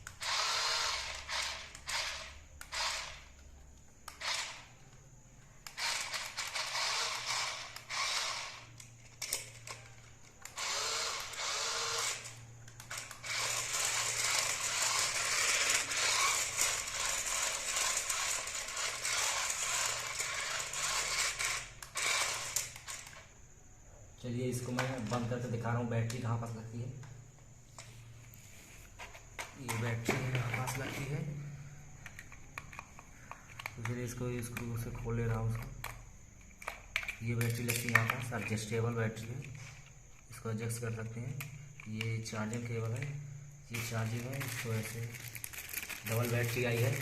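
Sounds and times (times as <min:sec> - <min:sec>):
toy truck motor whirring: 0:00.0 - 0:03.4, 0:04.0 - 0:04.7, 0:05.6 - 0:23.3, 0:43.7 - 0:47.0.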